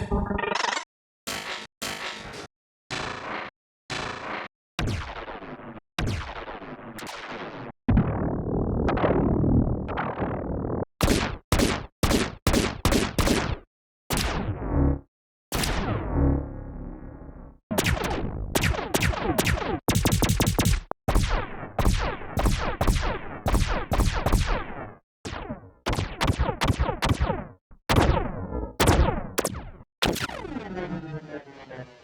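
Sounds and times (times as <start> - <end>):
synthesized gunshots: 11.0 - 14.4, 17.7 - 30.6.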